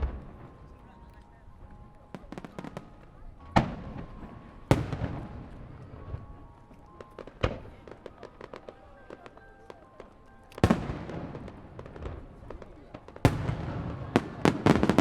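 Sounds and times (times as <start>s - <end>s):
faint music: 0.0s - 15.0s
fireworks crackling pops: 0.0s - 15.0s
fireworks booming: 2.2s - 6.4s, 10.6s - 15.0s.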